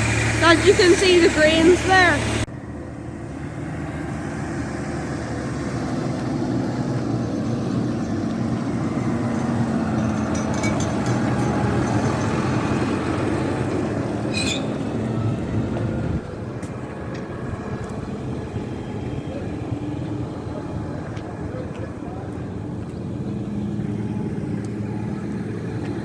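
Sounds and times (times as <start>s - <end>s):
heavy vehicle engine running: 0.0s - 26.0s
brief high squeak: 14.3s - 14.8s.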